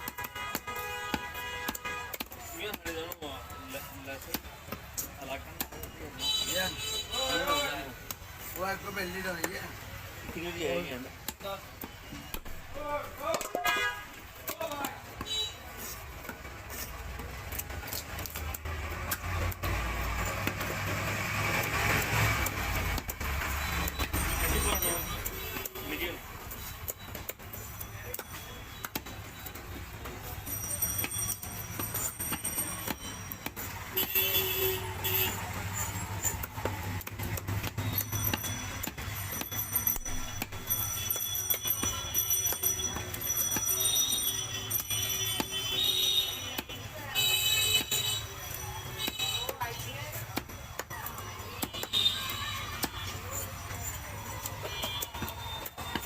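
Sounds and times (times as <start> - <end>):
vehicle engine rumbling: 15.7 - 47.0.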